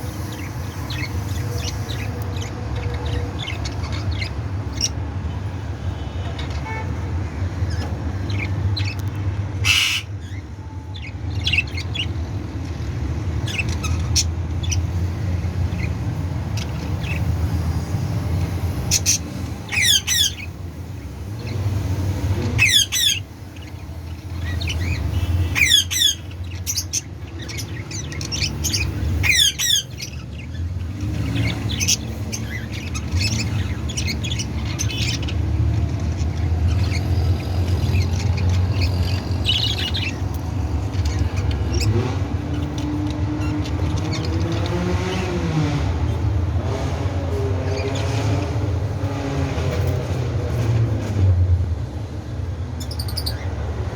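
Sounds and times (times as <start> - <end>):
budgerigars chirping: 0.0 - 5.6, 7.6 - 44.8, 52.8 - 53.6
harsh squawks: 9.6 - 10.3, 22.6 - 23.3.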